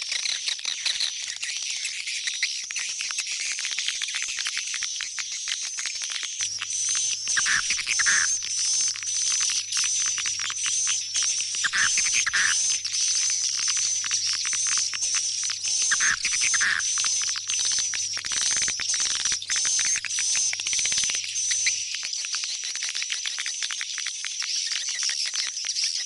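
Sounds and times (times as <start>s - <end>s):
swiftlets chirping rapidly: 6.6s - 21.0s.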